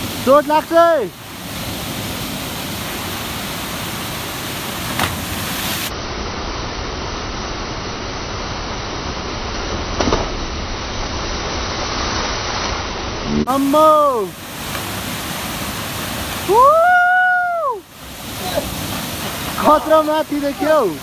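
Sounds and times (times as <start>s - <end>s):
waterfall rushing: 0.0s - 21.0s.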